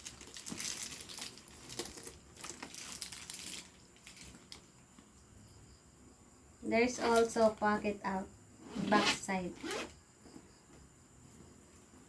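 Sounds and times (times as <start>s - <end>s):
leather bag rustling and crinkling: 0.0s - 4.7s, 7.0s - 7.6s.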